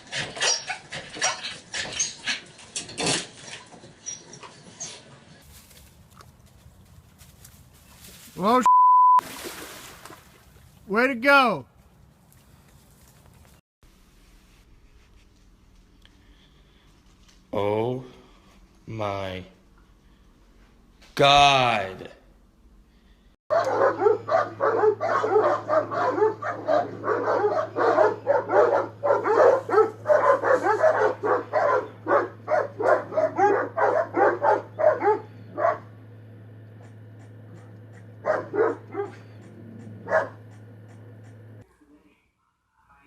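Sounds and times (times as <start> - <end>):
steady low hum: 11.7 - 43.0
dog barking: 23.5 - 35.9, 37.5 - 39.3, 40.0 - 40.6.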